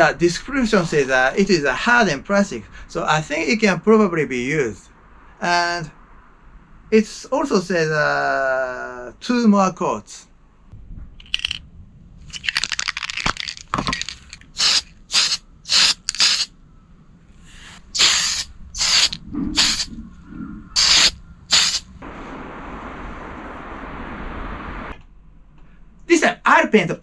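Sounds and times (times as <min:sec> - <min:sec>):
spray can hissing: 0:12.3 - 0:16.5, 0:17.5 - 0:19.9, 0:20.8 - 0:22.0.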